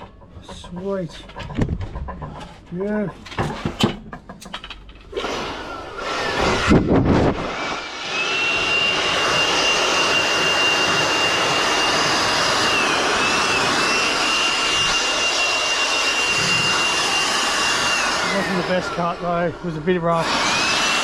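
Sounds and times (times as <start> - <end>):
knocks and handling sounds: 0.0 - 5.1
electric motor whining: 5.1 - 21.0.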